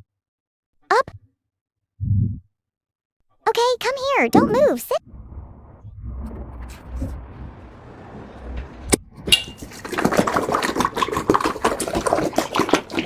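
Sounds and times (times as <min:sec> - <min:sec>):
pets eating from bowls: 0:06.2 - 0:13.0
clinking against bowls: 0:09.3 - 0:13.0.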